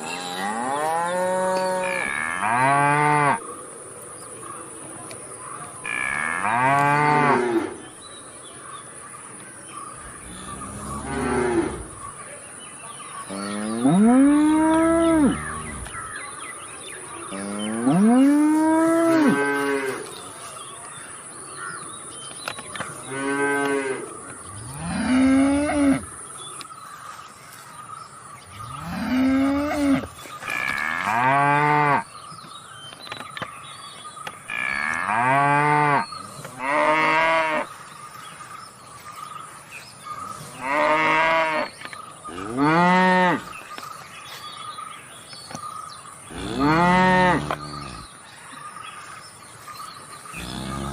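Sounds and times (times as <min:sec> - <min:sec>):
cattle mooing: 0:46.3 - 0:48.0, 0:50.4 - 0:50.9.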